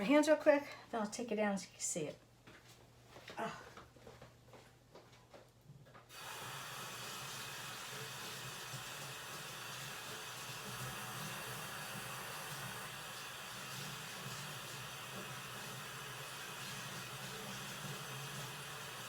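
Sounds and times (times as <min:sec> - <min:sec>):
tap water running into sink: 0:06.1 - 0:19.0.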